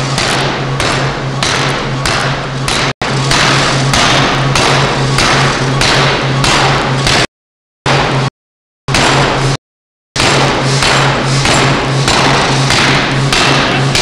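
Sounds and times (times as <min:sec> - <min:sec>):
pneumatic forging hammer blows: 0:00.0 - 0:07.3, 0:10.2 - 0:14.0
steady low hum: 0:00.0 - 0:07.3, 0:10.2 - 0:14.0.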